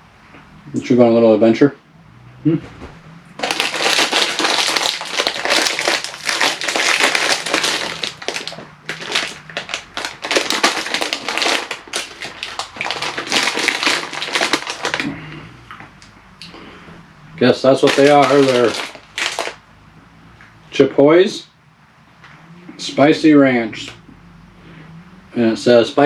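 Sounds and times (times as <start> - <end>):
plastic snack bag crinkling: 3.4 - 15.3, 17.6 - 19.6.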